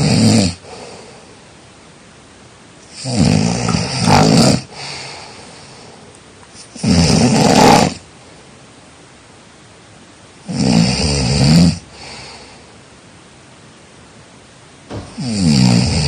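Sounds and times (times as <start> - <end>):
person snoring: 0.0 - 1.1, 2.9 - 5.5, 6.6 - 8.0, 15.1 - 16.0
soft breath: 0.6 - 1.5, 4.7 - 6.7, 11.9 - 12.8.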